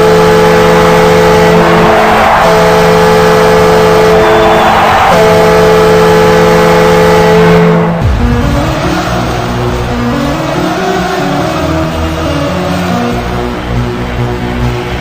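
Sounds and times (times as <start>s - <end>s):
goal horn blaring: 0.0s - 11.6s.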